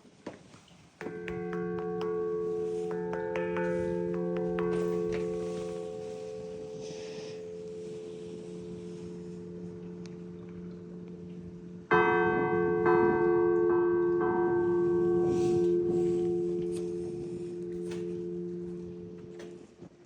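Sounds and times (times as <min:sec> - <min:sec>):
church bell ringing: 0:01.0 - 0:19.7.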